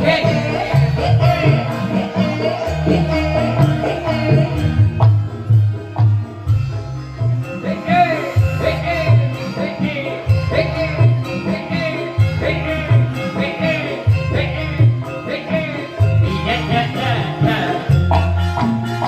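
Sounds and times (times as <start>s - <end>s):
hand-drum beat: 0.0s - 6.7s, 16.1s - 19.0s
live band music: 0.0s - 19.0s
steady bass: 0.0s - 19.0s.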